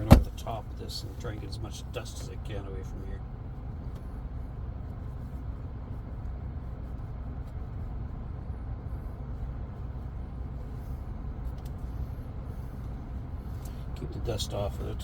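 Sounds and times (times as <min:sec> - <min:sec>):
air-conditioning blower: 0:00.0 - 0:15.0
truck engine idling: 0:00.0 - 0:15.0.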